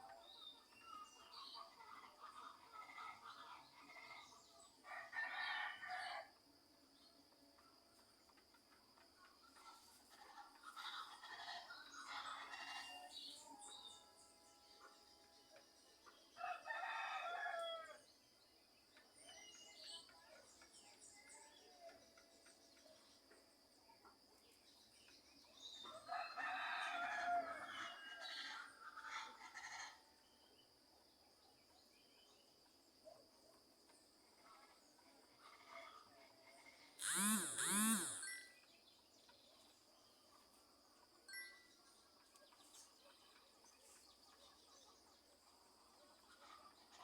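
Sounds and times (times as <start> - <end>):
rooster crowing: 16.4 - 18.0, 26.2 - 28.0, 37.0 - 38.2
small birds chirping: 37.0 - 38.4.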